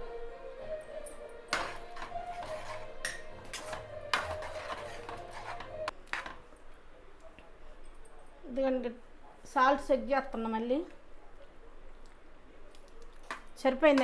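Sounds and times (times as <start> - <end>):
metal spoon scraping cooking pot: 1.5 - 6.4.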